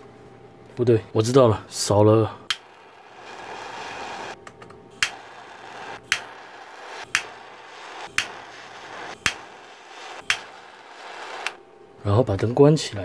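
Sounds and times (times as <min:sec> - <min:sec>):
sharp clicks: 0:06.1 - 0:06.3.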